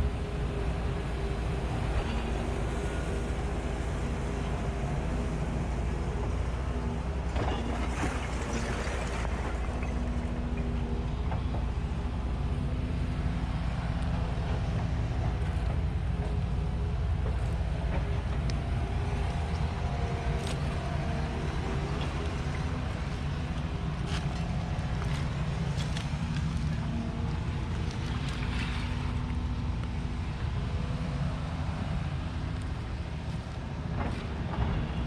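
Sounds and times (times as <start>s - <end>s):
heavy diesel machinery running: 0.0s - 35.0s.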